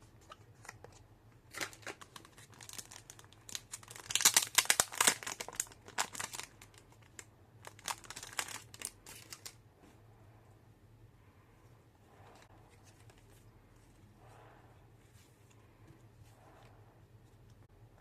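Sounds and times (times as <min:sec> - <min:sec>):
packaging crinkling: 0:00.6 - 0:09.6.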